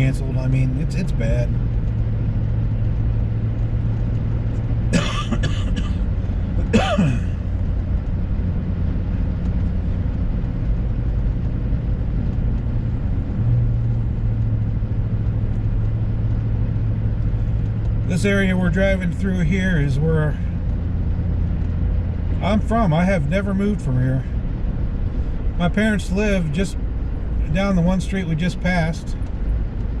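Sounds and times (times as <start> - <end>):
engine and road noise in truck cab: 0.0 - 30.0
person coughing: 5.0 - 6.0, 6.7 - 7.4.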